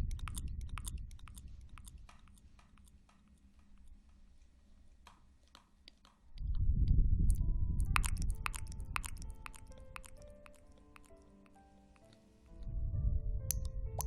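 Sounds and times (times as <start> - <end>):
crisp clicks and crackles: 0.0 - 6.6, 7.3 - 12.7
low rumble: 6.4 - 9.0, 12.6 - 14.0.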